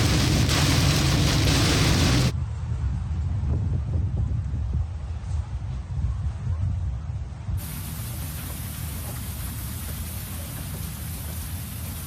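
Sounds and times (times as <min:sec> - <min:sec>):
heavy rain hiss: 0:00.0 - 0:02.3, 0:07.6 - 0:12.0
low thunder rumble: 0:00.0 - 0:02.9.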